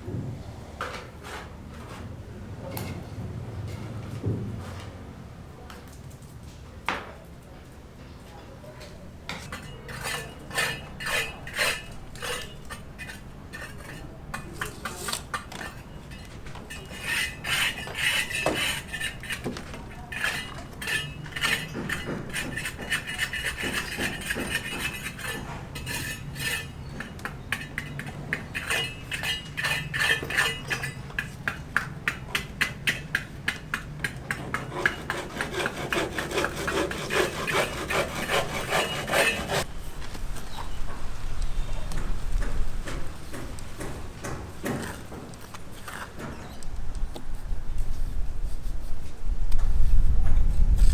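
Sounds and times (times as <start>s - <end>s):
metal objects clinking and scraping: 9.4s - 31.6s.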